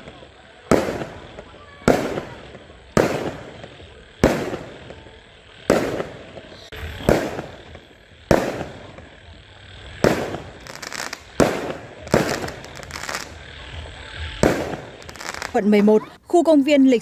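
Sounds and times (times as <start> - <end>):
fireworks booming: 0.0 - 17.0.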